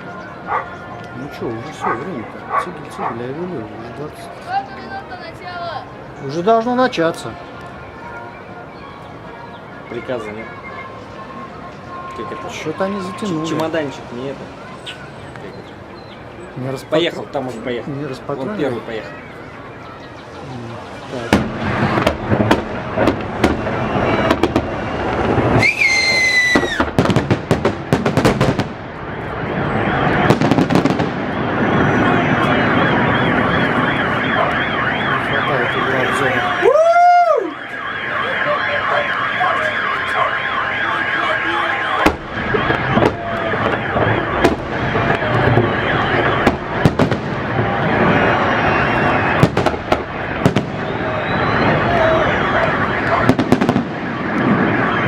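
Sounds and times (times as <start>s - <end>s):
fireworks bangs and crackles: 10.0s - 19.2s, 20.1s - 36.6s, 37.6s - 55.0s
high firework whistle: 23.1s - 27.1s, 29.5s - 55.0s
warbling alarm: 31.2s - 36.6s, 37.5s - 55.0s.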